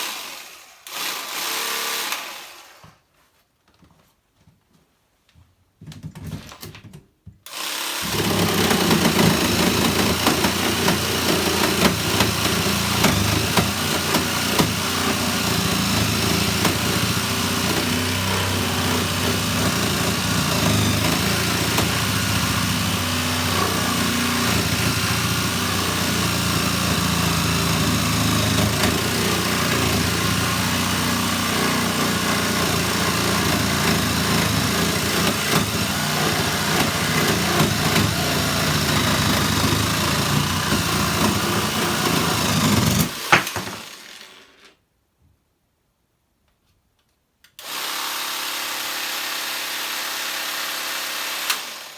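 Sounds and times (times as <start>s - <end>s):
cordless handsaw running: 7.5s - 44.7s, 47.6s - 51.9s.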